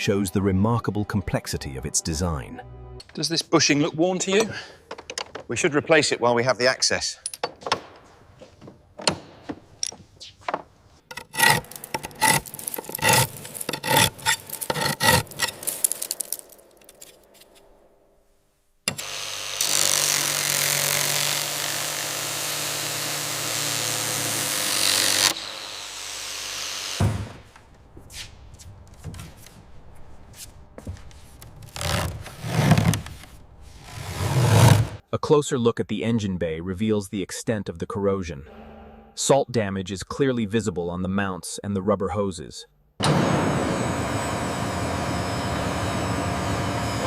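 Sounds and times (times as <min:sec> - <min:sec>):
metallic taps and clinks: 0:07.2 - 0:07.8
power tool running: 0:18.9 - 0:27.2, 0:43.0 - 0:47.0.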